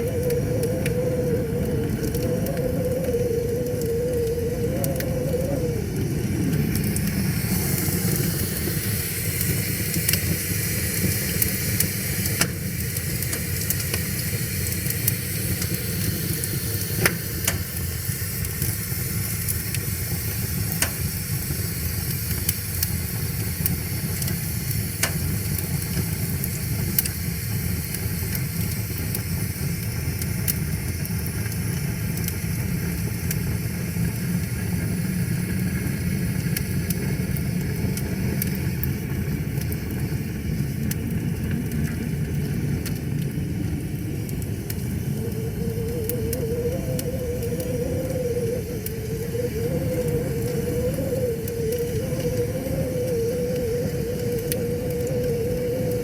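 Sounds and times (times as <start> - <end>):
low tone sliding down: 0.0 - 8.8, 44.0 - 56.0
wood fire crackling: 0.0 - 56.0.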